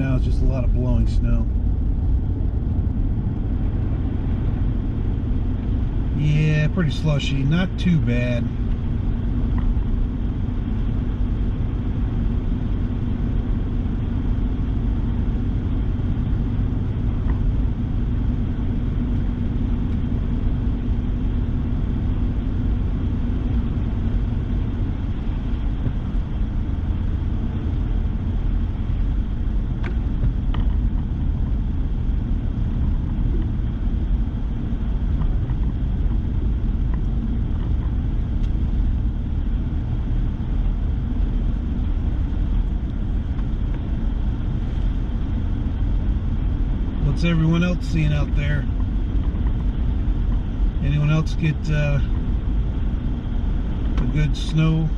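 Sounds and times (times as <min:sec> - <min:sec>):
truck engine and tyre noise: 0:00.0 - 0:54.9.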